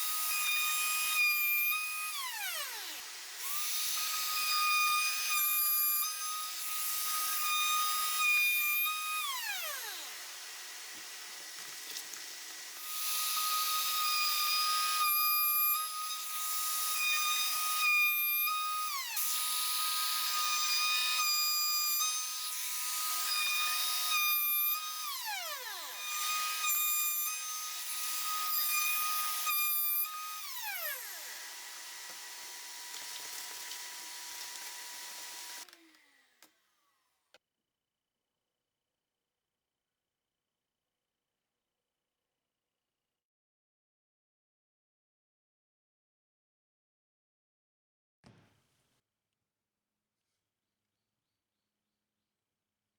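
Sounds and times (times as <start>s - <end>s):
trim router whine: 0.0s - 36.6s.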